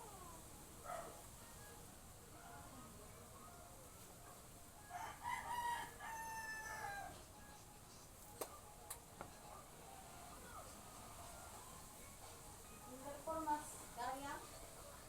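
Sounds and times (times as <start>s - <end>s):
rooster crowing: 4.9s - 7.2s.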